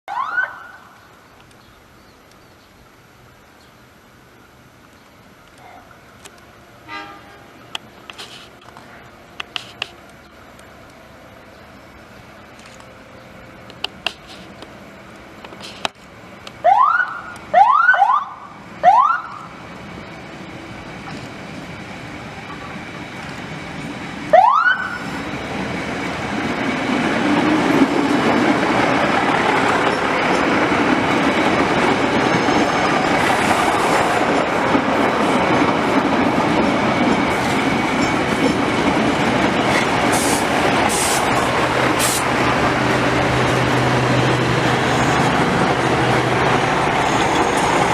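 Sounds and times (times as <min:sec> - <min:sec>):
siren rising whoops: 0:00.1 - 0:00.8, 0:16.6 - 0:19.5, 0:24.3 - 0:25.1
railcar running noise: 0:00.9 - 0:47.9.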